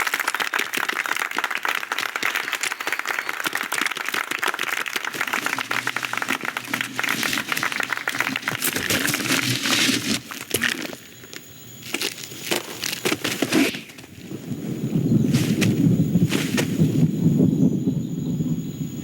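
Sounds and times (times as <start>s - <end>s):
dense rapid crackling: 4.4s - 11.0s.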